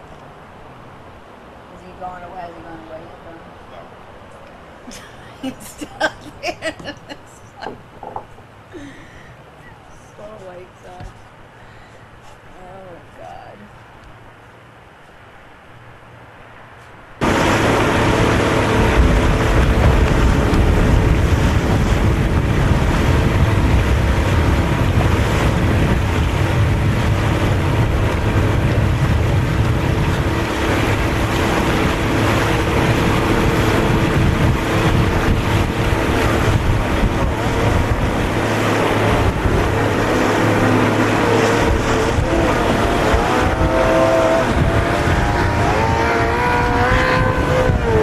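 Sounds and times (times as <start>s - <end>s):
water noise: 0.0s - 48.0s
motorboat engine running: 17.2s - 48.0s
wind buffeting microphone: 17.2s - 48.0s.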